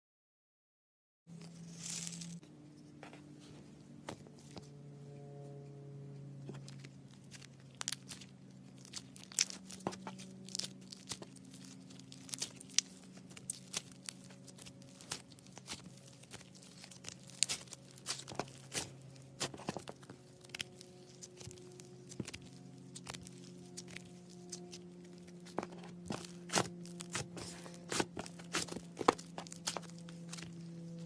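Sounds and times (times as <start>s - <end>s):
slime popping and crackling: 7.3s - 30.7s.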